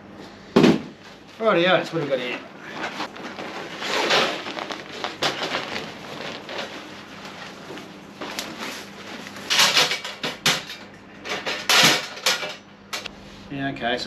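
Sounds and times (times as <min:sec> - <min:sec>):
rustling: 0:02.7 - 0:09.4.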